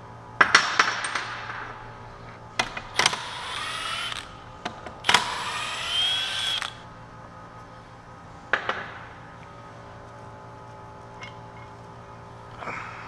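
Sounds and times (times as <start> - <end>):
power tool whirring: 2.6 - 6.8
small clicks: 5.1 - 6.8.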